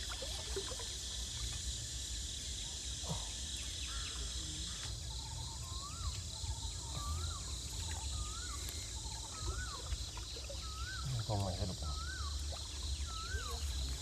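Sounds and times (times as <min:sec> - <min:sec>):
high buzzing of insects: 0:00.0 - 0:14.0
bird call with whistle: 0:05.5 - 0:14.0.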